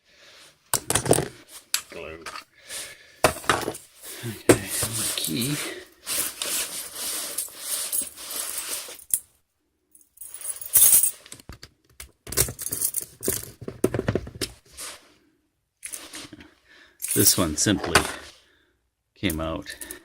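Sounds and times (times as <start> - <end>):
metal parts clicking and knocking: 10.9 - 14.2.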